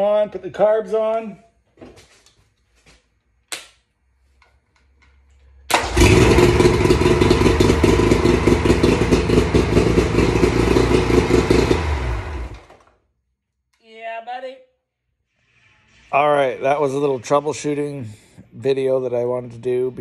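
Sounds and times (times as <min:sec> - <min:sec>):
outboard motor starting and running: 0:05.7 - 0:12.8.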